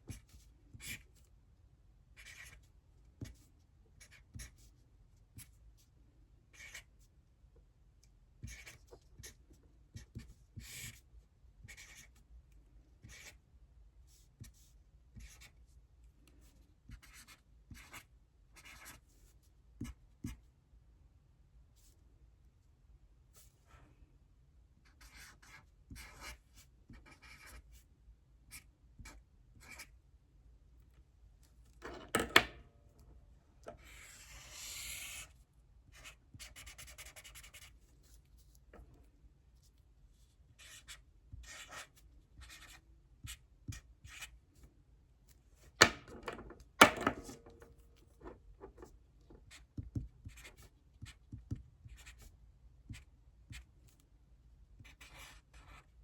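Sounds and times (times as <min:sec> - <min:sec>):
pen scratching on paper: 0:00.1 - 0:01.0, 0:02.2 - 0:03.4, 0:06.6 - 0:06.9, 0:08.4 - 0:09.4, 0:10.0 - 0:11.0, 0:11.7 - 0:12.2, 0:13.0 - 0:13.4, 0:15.2 - 0:15.5, 0:16.9 - 0:19.1, 0:24.9 - 0:27.7, 0:28.5 - 0:29.9, 0:33.8 - 0:38.2, 0:40.6 - 0:44.4, 0:48.2 - 0:52.3, 0:54.8 - 0:55.9.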